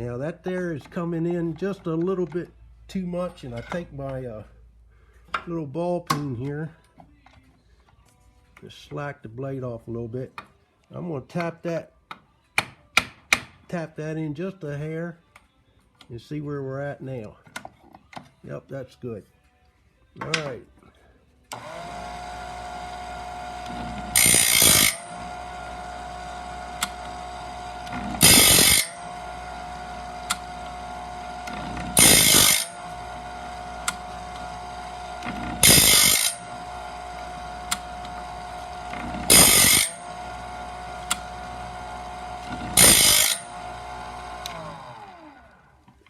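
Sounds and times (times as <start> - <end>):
diamond wheel grinding saw teeth: 21.5 - 45.3
sharpener motor running: 21.5 - 45.8.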